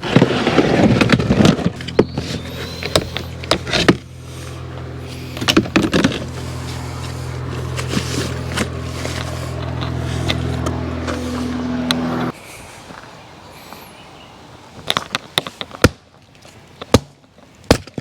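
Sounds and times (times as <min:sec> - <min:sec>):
low engine hum: 0:00.1 - 0:12.4.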